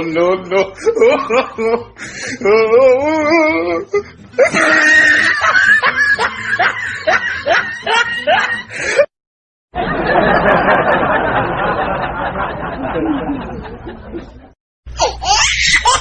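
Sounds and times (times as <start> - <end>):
person laughing: 0.7 - 1.9, 4.4 - 9.1.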